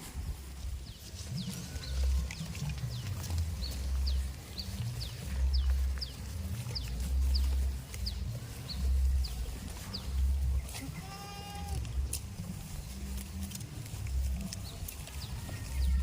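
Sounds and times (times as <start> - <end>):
goat bleating: 10.6 - 12.3, 14.9 - 16.0.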